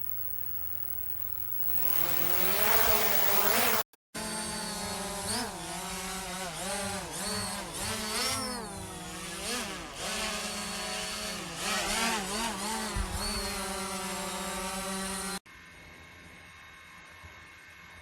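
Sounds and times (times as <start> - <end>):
drone propellers whirring: 0.0 - 14.0.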